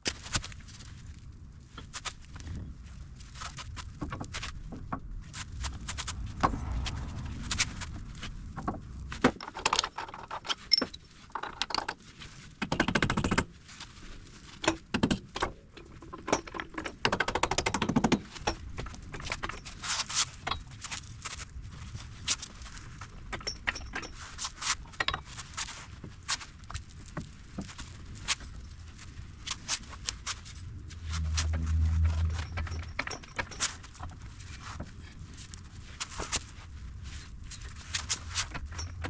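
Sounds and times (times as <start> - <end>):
metal tools clinking and scraping: 9.4 - 11.9, 31.1 - 34.2.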